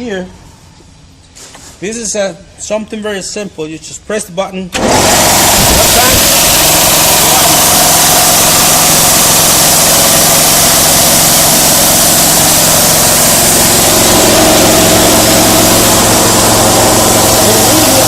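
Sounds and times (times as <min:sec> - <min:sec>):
compressor motor hum: 0:04.8 - 0:18.0
gas hissing: 0:04.8 - 0:18.0.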